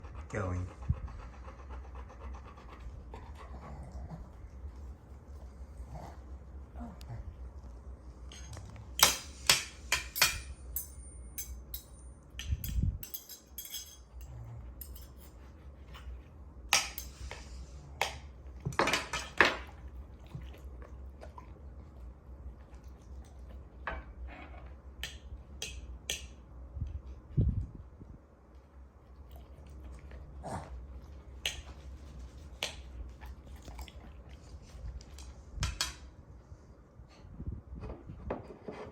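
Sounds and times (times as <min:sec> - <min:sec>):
dog eating from dish: 0:29.1 - 0:35.3.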